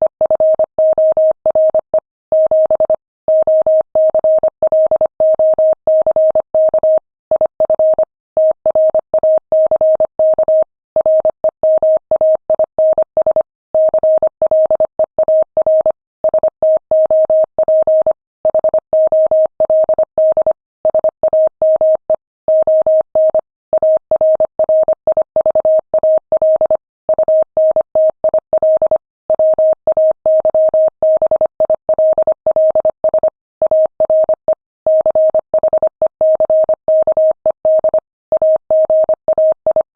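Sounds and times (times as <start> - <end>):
morse code tone beeping: 30.4 - 39.9.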